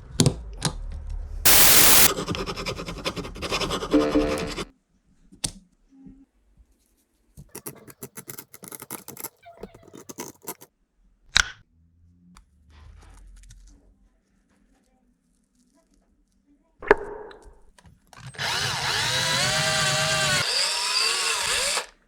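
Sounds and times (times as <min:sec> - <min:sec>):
loud grinding noise: 0:01.5 - 0:04.7, 0:18.4 - 0:21.9
sharp clicks and scrapes: 0:07.5 - 0:10.7.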